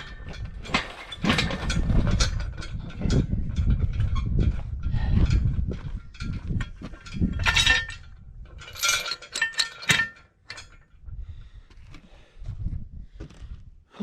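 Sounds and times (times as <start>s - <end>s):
metallic rattle: 0.0s - 10.9s
metal clinking and clanking: 0.0s - 11.0s.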